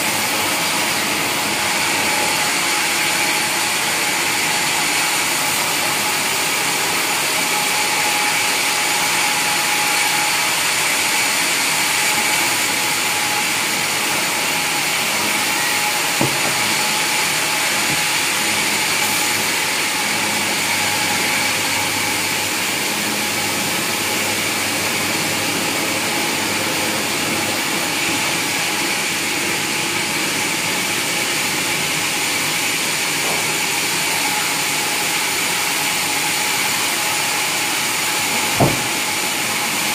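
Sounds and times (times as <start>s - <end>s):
sawmill saw running: 0.0s - 39.9s
short knock: 16.2s - 16.8s, 38.6s - 39.0s.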